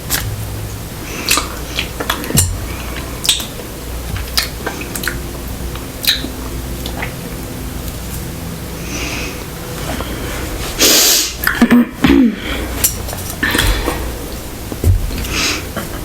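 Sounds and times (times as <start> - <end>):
person chewing food: 1.0 - 16.0.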